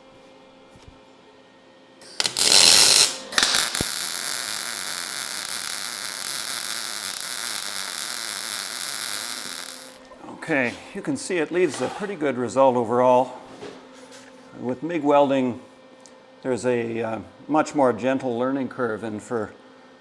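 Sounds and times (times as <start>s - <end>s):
welding arc crackling: 2.0s - 10.0s.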